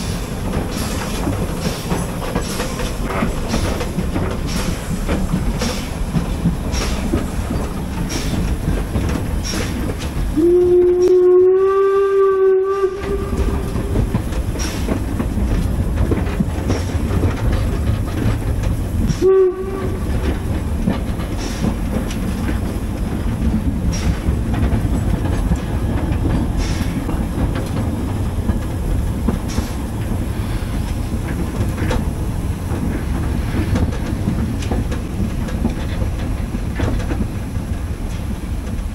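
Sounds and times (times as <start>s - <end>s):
steam locomotive running: 0.0s - 38.9s
steam whistle blowing: 10.4s - 13.6s, 19.2s - 20.0s.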